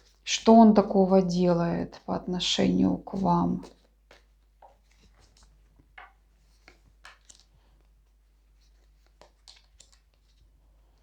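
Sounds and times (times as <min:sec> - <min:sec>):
cards rustling: 0:03.1 - 0:10.6
light clicks of cards: 0:08.6 - 0:10.5.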